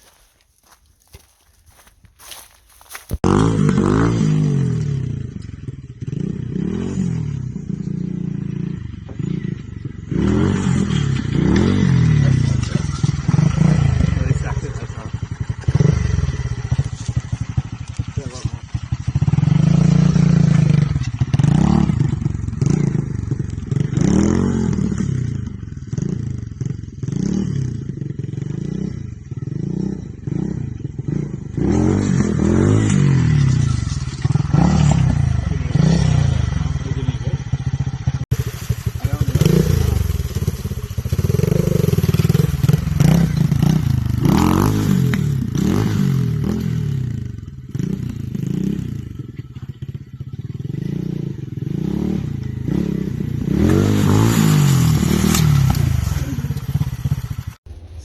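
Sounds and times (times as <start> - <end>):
bike rattling: 0.0 - 3.4, 37.6 - 50.7, 52.8 - 58.0
small motorcycle engine revving: 0.0 - 58.0.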